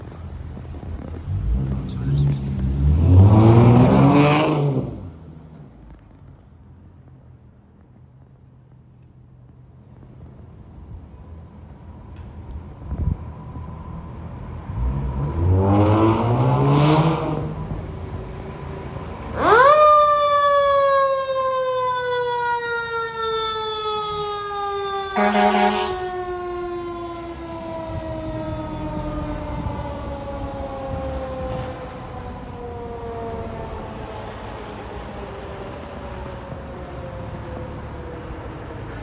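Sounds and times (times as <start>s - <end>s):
fire engine revving: 0.0s - 6.1s, 13.0s - 39.0s
mechanical siren whining: 19.3s - 38.6s
short horn blast: 25.2s - 26.0s.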